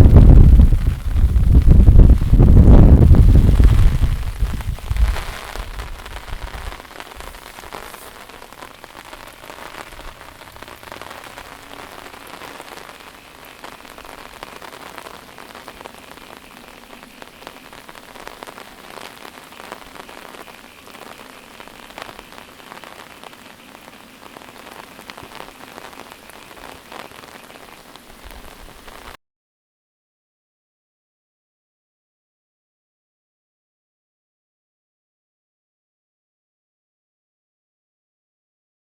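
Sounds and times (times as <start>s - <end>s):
heavy rain falling: 0.0s - 29.2s.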